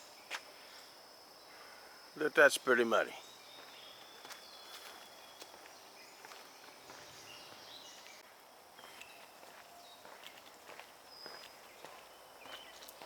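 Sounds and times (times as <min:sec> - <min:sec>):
footsteps walking: 0:03.5 - 0:13.0.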